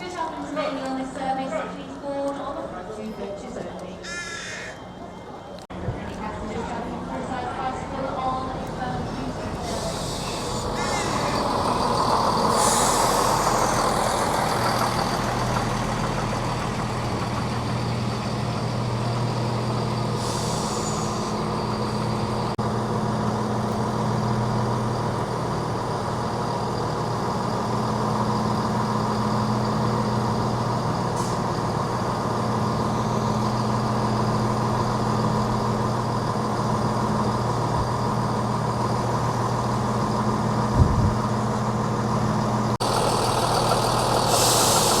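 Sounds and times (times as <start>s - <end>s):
train idling low hum: 0.0s - 45.0s
air brake hisses: 9.6s - 11.4s, 12.4s - 13.8s, 20.1s - 21.4s, 44.2s - 45.0s.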